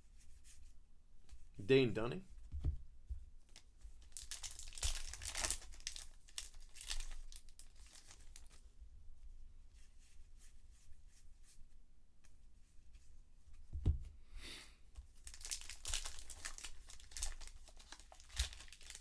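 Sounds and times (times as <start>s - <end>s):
wrappers crinkling and tearing: 3.6s - 8.6s, 15.2s - 19.0s
cards rustling: 15.3s - 19.0s.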